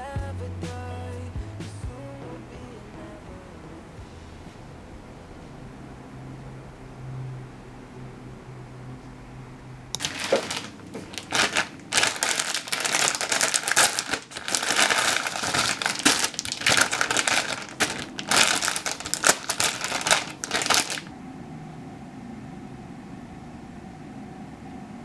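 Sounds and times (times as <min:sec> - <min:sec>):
crinkling and crumpling: 0:10.0 - 0:21.1.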